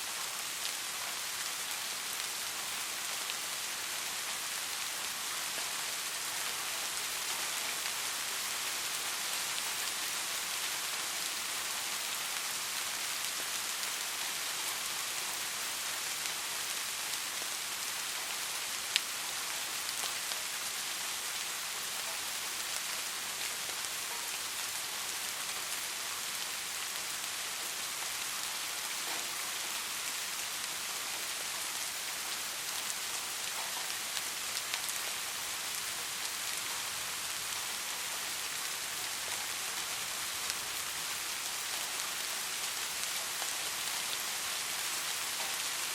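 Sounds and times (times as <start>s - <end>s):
steady rain falling: 0.0s - 45.9s.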